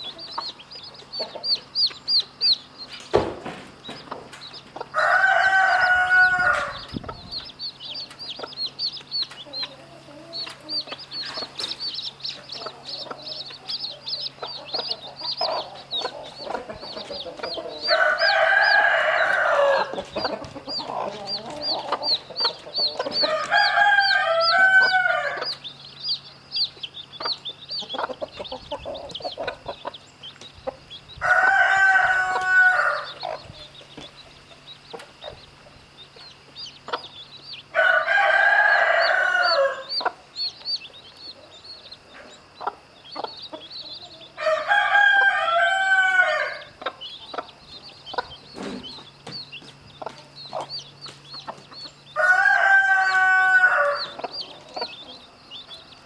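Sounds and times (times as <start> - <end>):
chicks peeping: 0.0 - 56.0
rooster crowing: 4.9 - 6.9, 17.5 - 22.2, 22.8 - 25.5, 31.2 - 33.2, 37.7 - 40.1, 44.2 - 46.8, 52.2 - 55.0.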